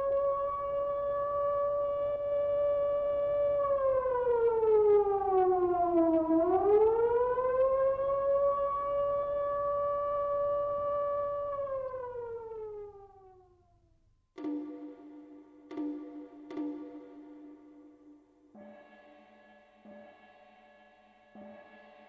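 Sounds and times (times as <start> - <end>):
siren-like wailing tone: 0.0 - 13.1.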